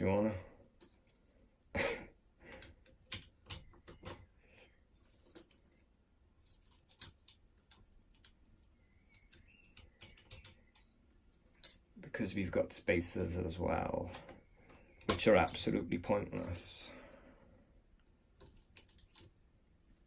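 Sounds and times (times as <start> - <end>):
lock parts clicking and tapping: 2.5 - 4.4, 5.0 - 12.0, 14.0 - 16.7, 18.3 - 19.4.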